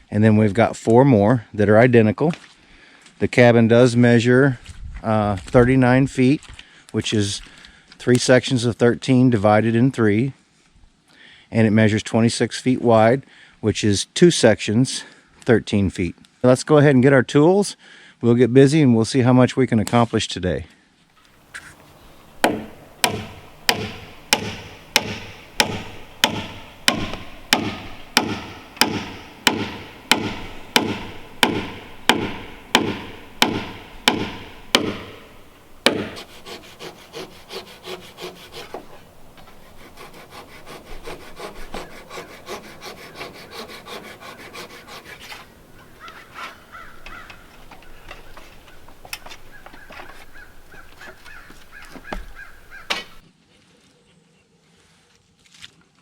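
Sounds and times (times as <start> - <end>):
hand saw cutting timber: 21.5 - 53.2.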